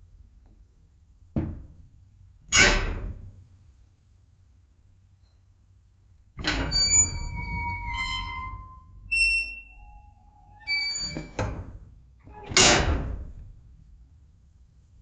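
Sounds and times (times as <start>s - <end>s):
metal door squealing and grating: 2.5s - 3.2s, 6.4s - 13.3s
metal cell door slamming: 2.6s - 3.3s, 6.4s - 9.7s, 10.6s - 11.8s, 12.4s - 13.4s.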